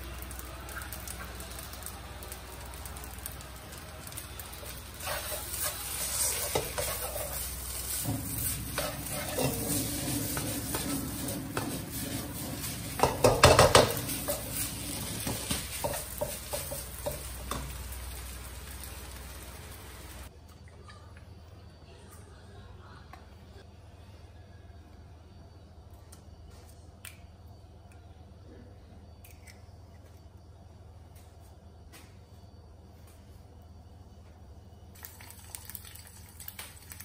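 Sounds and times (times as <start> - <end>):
food sizzling: 0.0 - 20.3, 35.0 - 37.0
spatula scraping a pan: 4.9 - 17.2.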